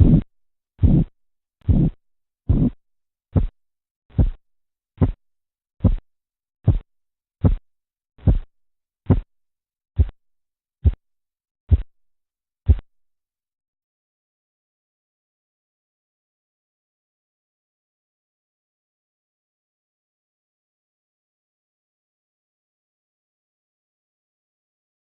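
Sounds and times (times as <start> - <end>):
pulse beats through stethoscope: 0.0 - 4.4, 5.0 - 5.2, 5.8 - 6.0, 6.6 - 7.6, 8.2 - 8.5, 9.1 - 9.3, 10.0 - 10.2, 10.8 - 11.0, 11.7 - 12.0, 12.7 - 12.9.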